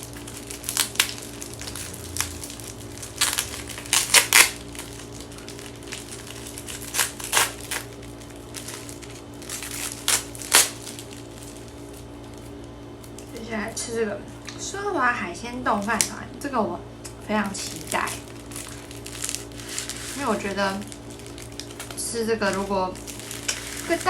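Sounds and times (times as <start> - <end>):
plastic wrapping crinkling: 0.0 - 13.5, 15.6 - 16.3, 17.0 - 24.0.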